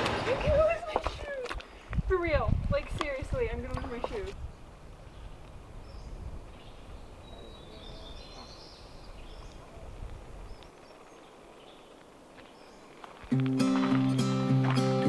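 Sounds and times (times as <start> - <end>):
faint bird chirps: 5.1 - 13.0
music: 13.3 - 15.0.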